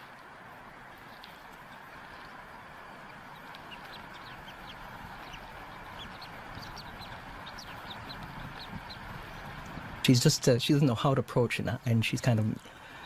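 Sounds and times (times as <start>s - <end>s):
chick peeping: 1.0s - 10.0s
steady rushing background: 2.6s - 10.1s.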